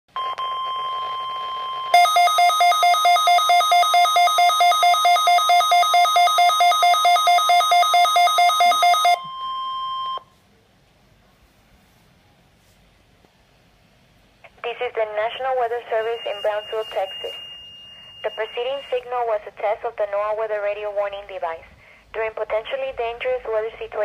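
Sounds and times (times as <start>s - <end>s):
steady high alarm tone: 1.9s - 10.2s, 15.9s - 18.9s
rapid alert beeps: 2.0s - 10.2s, 16.0s - 18.9s.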